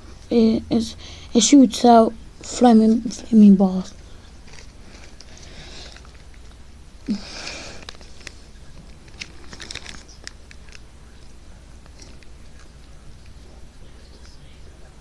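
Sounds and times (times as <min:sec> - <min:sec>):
packaging rustle: 0:04.4 - 0:06.6, 0:07.4 - 0:10.9.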